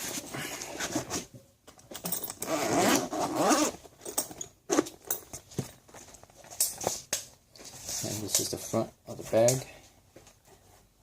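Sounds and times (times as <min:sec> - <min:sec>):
zipper rasping open: 0:02.3 - 0:03.8.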